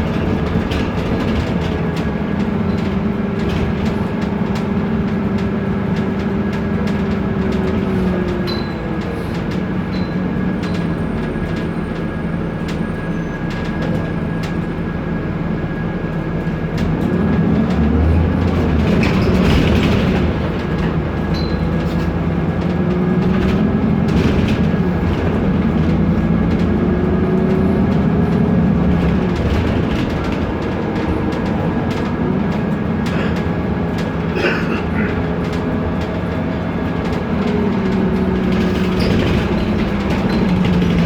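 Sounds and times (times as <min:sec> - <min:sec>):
bus engine hum: 0:00.0 - 0:41.0
interior parts rattling: 0:17.7 - 0:41.0.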